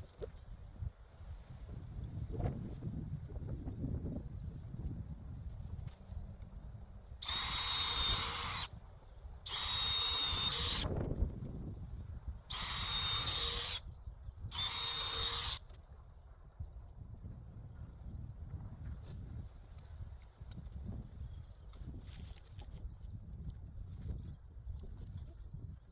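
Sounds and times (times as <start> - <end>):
power drill whining: 7.2 - 8.7, 9.5 - 10.9, 12.5 - 13.8, 14.5 - 15.6.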